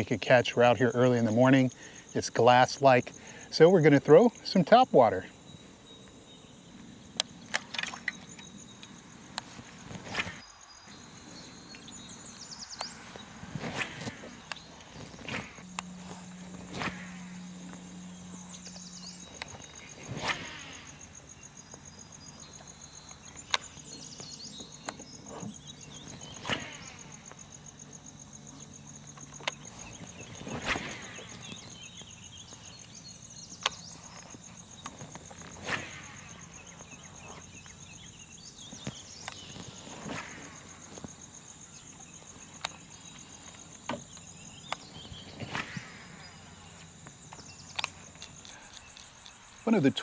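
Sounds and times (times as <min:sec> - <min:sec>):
insects buzzing: 0:00.0 - 0:50.0
sharp clicks: 0:47.7 - 0:50.0.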